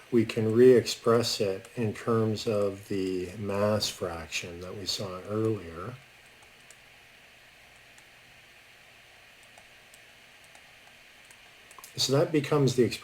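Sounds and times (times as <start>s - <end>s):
room tone hiss: 0.0s - 13.0s
faint clicks: 5.4s - 6.8s, 9.4s - 12.0s.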